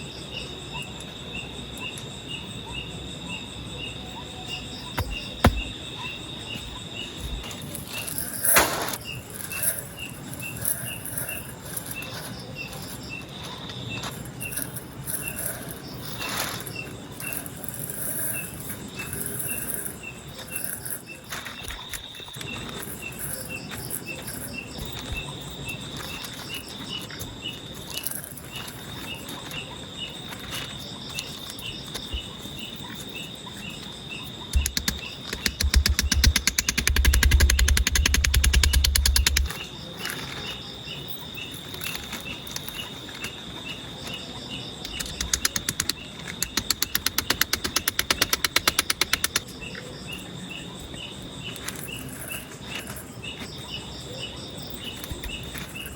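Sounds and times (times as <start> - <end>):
forest insects chirping and buzzing: 0.0 - 55.9
sharp knocks: 5.0 - 6.0, 34.6 - 39.6.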